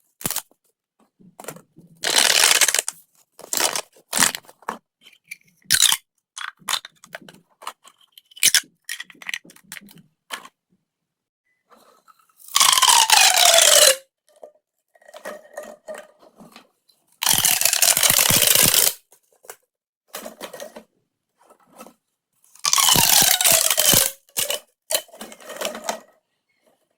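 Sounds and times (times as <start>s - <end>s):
plastic pop tubes popping: 2.0s - 4.4s, 17.2s - 19.0s, 22.7s - 25.0s.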